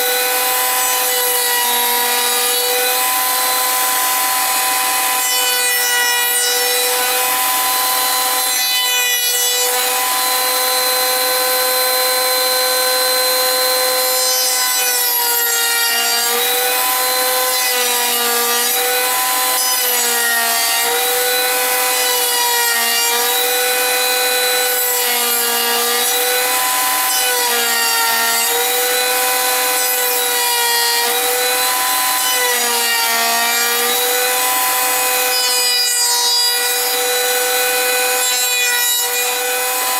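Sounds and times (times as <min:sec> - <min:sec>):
electric woodworking machine cutting wood: 0:00.0 - 0:39.9.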